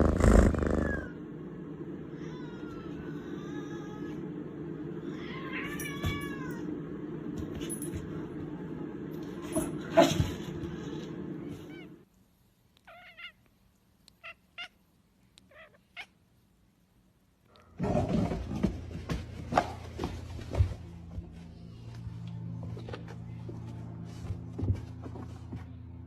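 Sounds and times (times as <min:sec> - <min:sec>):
background hum: 0:00.0 - 0:26.0
cat meowing: 0:05.1 - 0:06.7, 0:12.8 - 0:13.5, 0:15.5 - 0:16.2.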